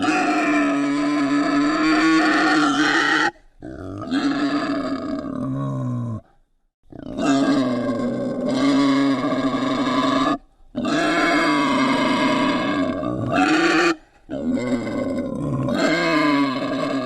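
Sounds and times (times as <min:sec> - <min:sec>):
wild boar screaming: 0:00.0 - 0:06.2, 0:06.9 - 0:17.0.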